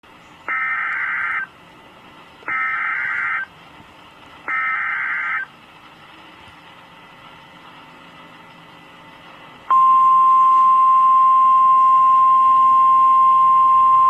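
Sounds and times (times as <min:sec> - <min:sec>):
radio hiss: 0:00.1 - 0:08.2
raspy two-tone data bursts: 0:00.5 - 0:01.5, 0:02.5 - 0:03.5, 0:04.5 - 0:05.5.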